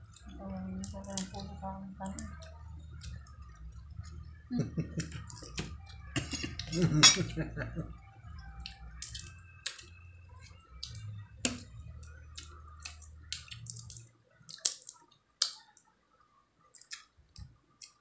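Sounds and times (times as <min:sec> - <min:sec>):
low hum: 0:00.0 - 0:14.1
crab shell cracking: 0:12.4 - 0:15.8, 0:16.7 - 0:17.1.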